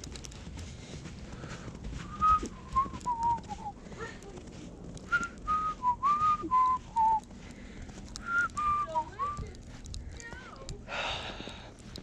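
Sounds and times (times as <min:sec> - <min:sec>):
person whistling a tune: 0:02.1 - 0:03.7, 0:05.1 - 0:07.2
faint clicks: 0:06.6 - 0:08.7, 0:09.3 - 0:10.8.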